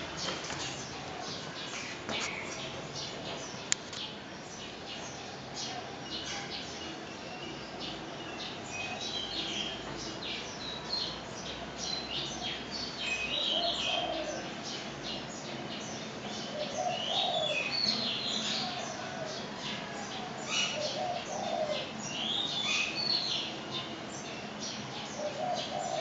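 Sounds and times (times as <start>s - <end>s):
small birds chirping: 0.0s - 26.0s
dove cooing: 13.3s - 14.6s, 16.4s - 17.7s, 18.4s - 22.0s, 24.9s - 26.0s.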